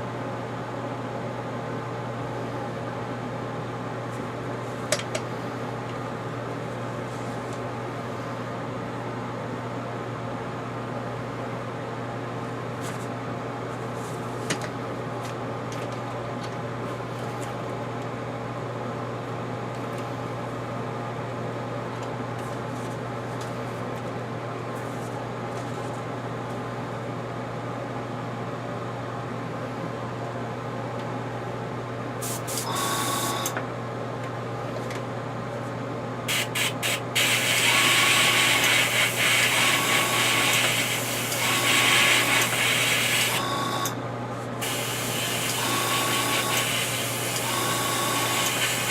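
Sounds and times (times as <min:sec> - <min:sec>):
airbrush spraying paint: 0:36.3 - 0:43.4, 0:44.6 - 0:47.4, 0:48.3 - 0:48.9.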